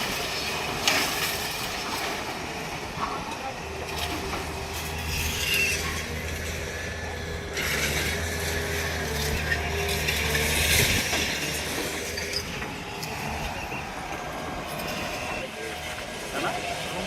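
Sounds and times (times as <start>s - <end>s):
demolition machine diesel hum: 0.0s - 17.0s
grating scraping noise: 3.9s - 17.0s.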